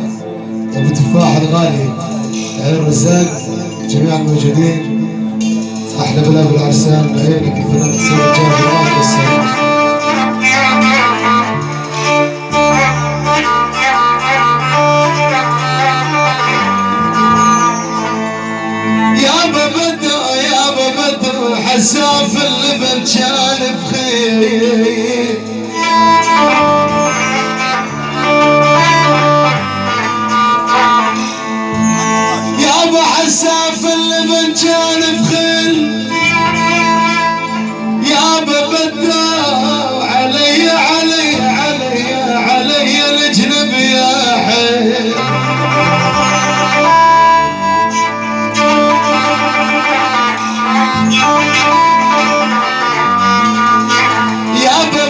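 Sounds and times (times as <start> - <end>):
bass line: 0.0 - 38.7
sustained melody notes: 0.0 - 55.0.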